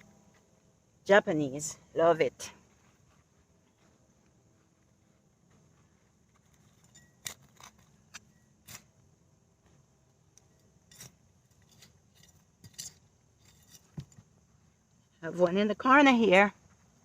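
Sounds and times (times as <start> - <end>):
digging scrapes in dry soil: 6.3 - 9.0, 10.8 - 14.1.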